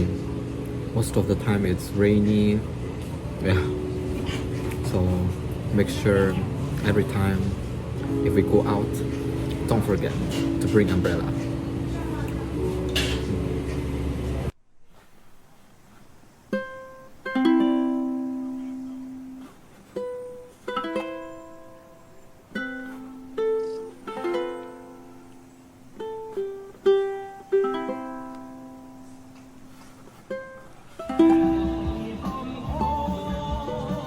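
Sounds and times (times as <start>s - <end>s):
plucked string melody: 0.0s - 14.5s, 16.5s - 34.0s.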